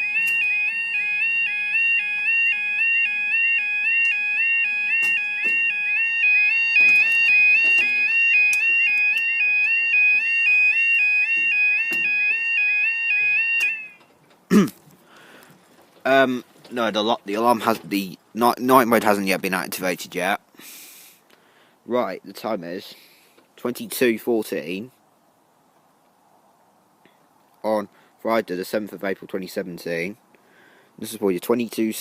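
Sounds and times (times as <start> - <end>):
level crossing alarm warbling: 0.0 - 14.1.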